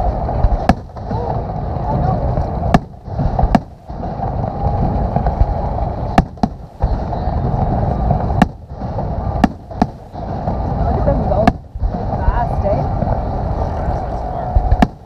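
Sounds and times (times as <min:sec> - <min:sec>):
continuous rumble: 0:00.0 - 0:15.0
fireworks shells bursting: 0:02.4 - 0:13.1.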